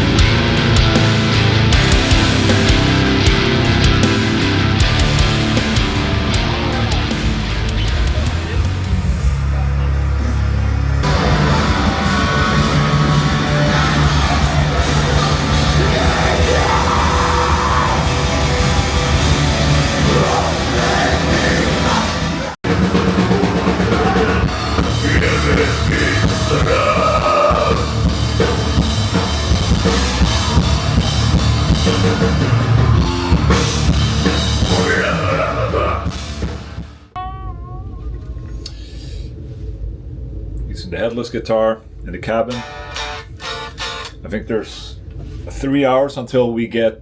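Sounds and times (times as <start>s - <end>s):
pounding drum kit: 0.0s - 9.9s, 11.0s - 37.1s
heavy metal music: 0.0s - 37.2s.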